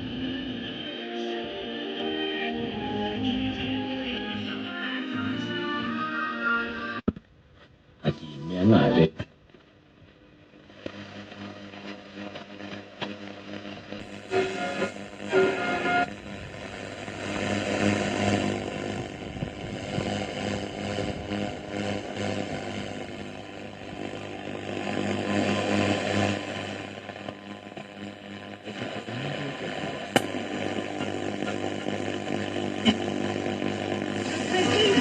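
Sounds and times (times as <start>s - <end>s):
radio static: 8.0s - 9.3s, 10.5s - 35.0s
steady low hum: 10.0s - 35.0s
sharp crackle: 10.5s - 35.0s.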